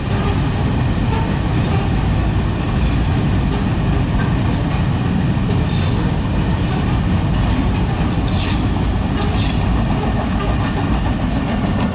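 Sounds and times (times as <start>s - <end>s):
freight train wagons rumbling: 0.0s - 11.9s
train wheels squealing: 7.5s - 9.9s.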